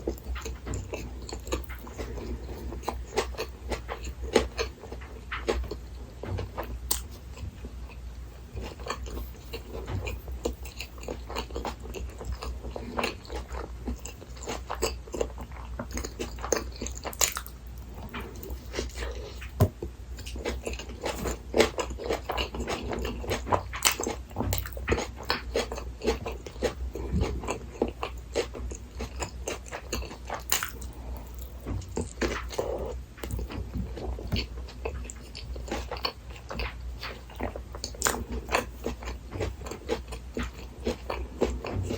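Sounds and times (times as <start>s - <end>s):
biting and chewing: 0.0s - 41.9s
food crunching: 0.0s - 41.9s.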